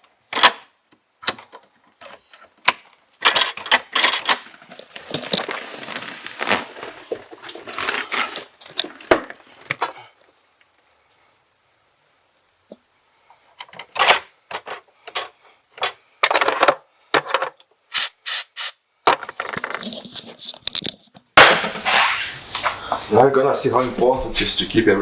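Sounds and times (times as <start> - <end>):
rustling and scraping: 3.4 - 10.1, 19.2 - 24.8.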